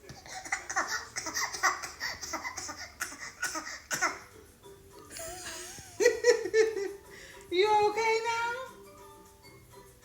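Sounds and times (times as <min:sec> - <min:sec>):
laughter: 0:05.1 - 0:07.0.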